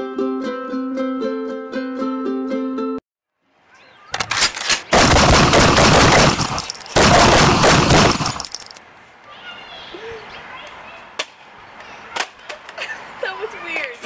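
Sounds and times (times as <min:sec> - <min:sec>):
automatic gunfire: 0:04.8 - 0:08.8.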